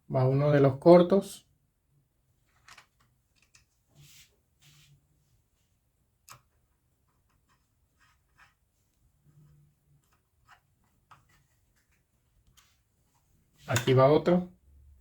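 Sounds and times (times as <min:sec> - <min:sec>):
soft scrapes: 0:03.9 - 0:05.8.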